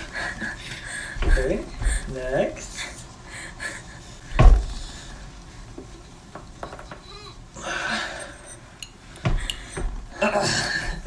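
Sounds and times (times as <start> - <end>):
heavy body thump: 4.3 - 4.8.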